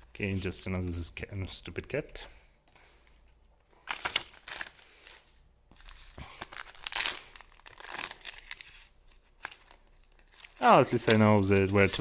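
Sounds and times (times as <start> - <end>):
foil wrapper crinkling and tearing: 3.8 - 5.2, 5.8 - 12.0.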